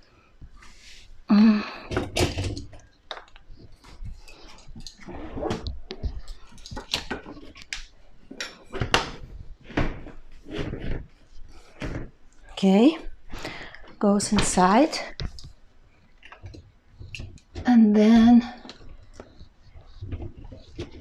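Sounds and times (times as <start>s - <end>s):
knocks clicks and scrapes: 16.2s - 21.0s.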